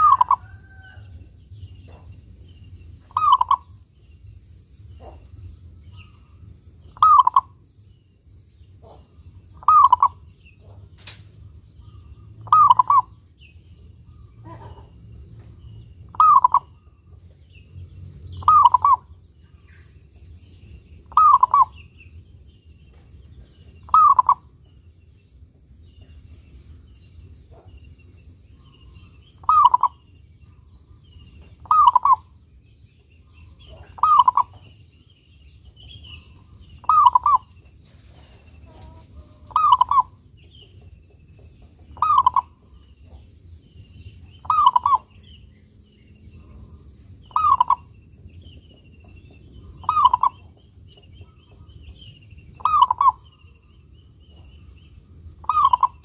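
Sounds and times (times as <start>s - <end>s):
dove cooing: 0.0s - 1.0s, 3.1s - 3.7s, 7.0s - 7.6s, 8.8s - 10.8s, 12.0s - 13.1s, 16.1s - 16.7s, 18.4s - 19.1s, 21.1s - 21.8s, 23.9s - 24.5s, 29.4s - 30.0s, 31.6s - 32.3s, 33.6s - 34.6s, 36.8s - 37.5s, 38.7s - 40.2s, 42.0s - 42.6s, 44.4s - 45.1s, 47.3s - 47.9s, 49.6s - 50.5s, 52.6s - 53.2s, 55.4s - 56.0s.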